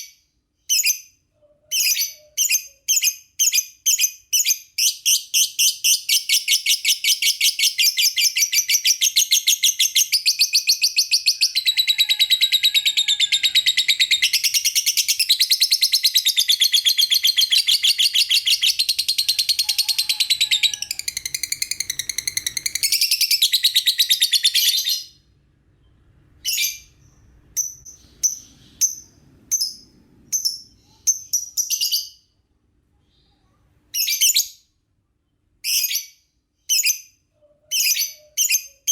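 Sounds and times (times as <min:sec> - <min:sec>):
lovebird chirping trill: 0:01.7 - 0:32.3.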